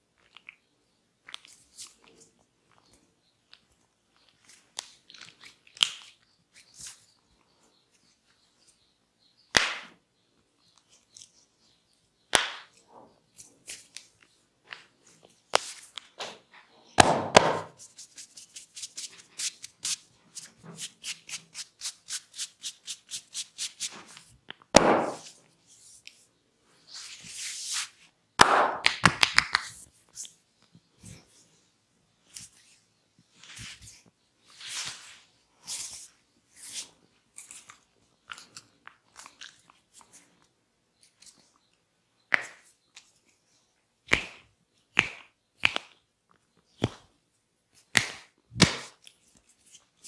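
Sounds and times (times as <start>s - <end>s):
hands slapping head: 9.5s - 10.0s, 12.3s - 12.8s, 17.0s - 20.0s, 24.7s - 25.3s, 28.4s - 29.8s, 42.3s - 42.7s, 44.1s - 46.0s, 47.9s - 49.1s.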